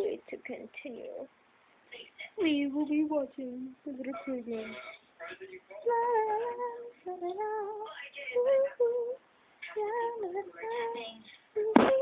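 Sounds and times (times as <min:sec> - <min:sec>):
woman singing: 0:02.4 - 0:05.0, 0:05.7 - 0:12.0.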